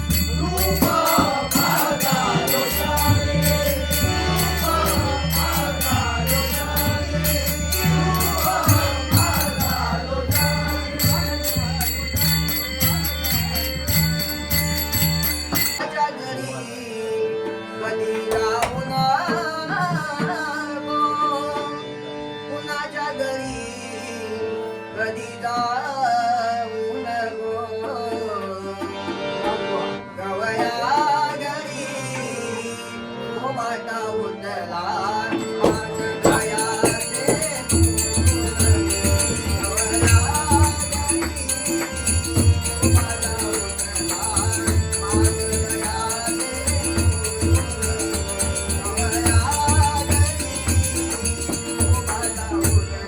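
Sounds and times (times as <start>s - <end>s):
steady held tones: 0.0s - 15.8s, 35.4s - 53.0s
tabla drums: 0.0s - 15.9s, 18.3s - 20.6s, 35.4s - 53.0s
young man singing: 0.0s - 53.0s
metallic jingling: 35.6s - 52.6s.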